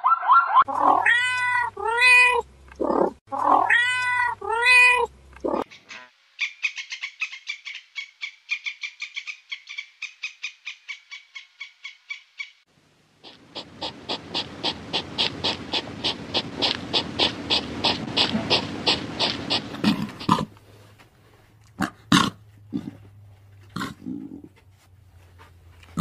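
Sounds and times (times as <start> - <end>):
rapid repeated animal calls: 13.2 - 20.5.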